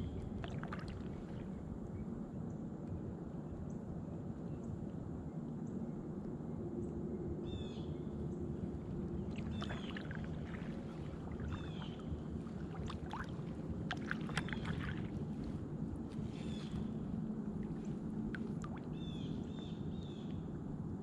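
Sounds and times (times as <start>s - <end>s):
water washing around paddle: 0.4s - 1.4s, 9.2s - 15.6s
bird chirping song: 7.4s - 8.5s, 9.3s - 12.6s, 16.2s - 17.0s, 18.9s - 20.4s.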